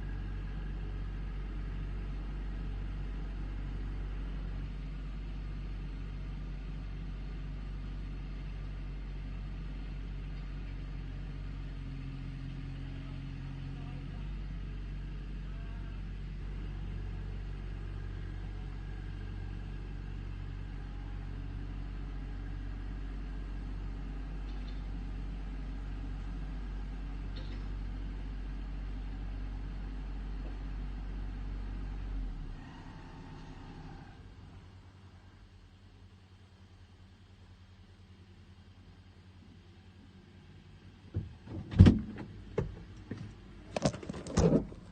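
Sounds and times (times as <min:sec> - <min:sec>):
diesel engine droning: 0:00.0 - 0:44.9.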